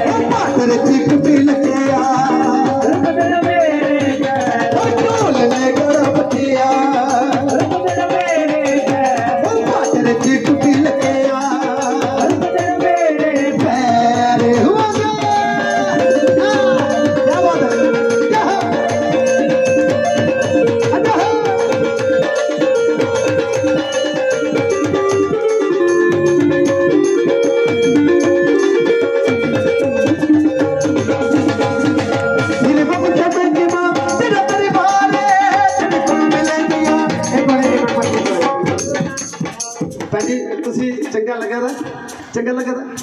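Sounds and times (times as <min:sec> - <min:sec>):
hand drum beat: 0:00.0 - 0:43.0
folk melody: 0:14.4 - 0:39.8.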